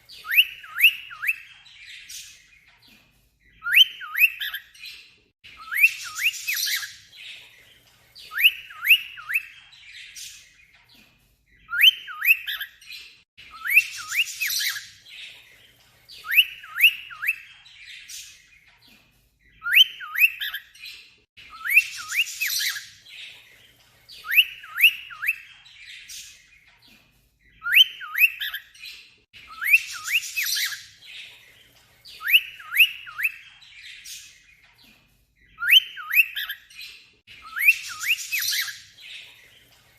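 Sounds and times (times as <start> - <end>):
cockatiel whistled chirps: 0.2 - 2.4, 3.6 - 4.7, 5.6 - 7.0, 8.2 - 10.4, 11.7 - 12.7, 13.5 - 14.9, 16.2 - 18.3, 19.6 - 20.7, 21.5 - 22.9, 24.2 - 26.3, 27.6 - 28.7, 29.4 - 30.9, 32.1 - 34.3, 35.6 - 36.7, 37.4 - 39.2.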